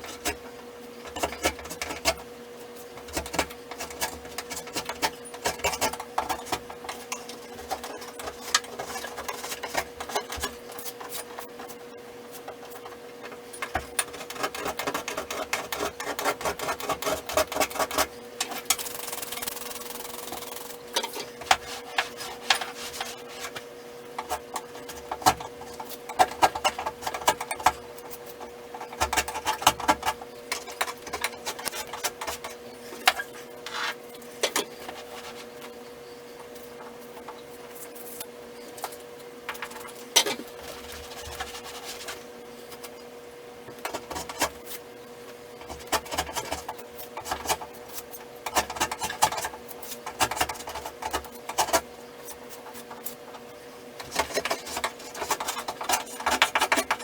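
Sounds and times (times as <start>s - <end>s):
wallpaper being scraped off: 21.5s - 23.6s, 33.6s - 34.0s.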